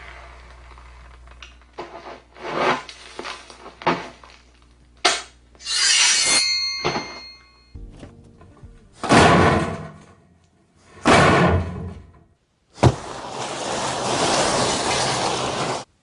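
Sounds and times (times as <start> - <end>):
heavy slams: 9.0 - 10.1, 11.0 - 12.0.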